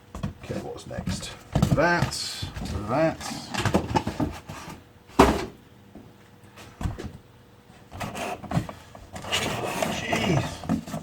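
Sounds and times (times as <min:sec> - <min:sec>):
cardboard rustling and scraping: 0:00.5 - 0:05.5, 0:07.8 - 0:11.0.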